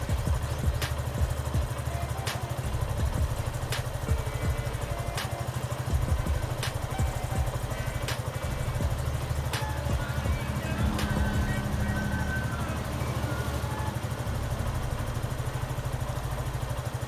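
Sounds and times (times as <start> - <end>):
motorcycle engine idling: 0.0 - 17.0
sharp click: 0.8 - 1.2, 2.3 - 2.8, 3.7 - 4.2, 5.2 - 5.6, 6.6 - 7.1, 8.0 - 8.5.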